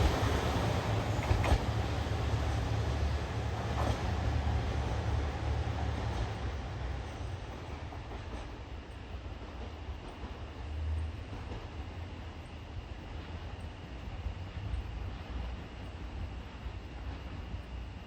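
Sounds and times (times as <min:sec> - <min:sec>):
train wheel clicks on rails: 0:00.0 - 0:12.0
diesel train engines droning: 0:00.0 - 0:18.0.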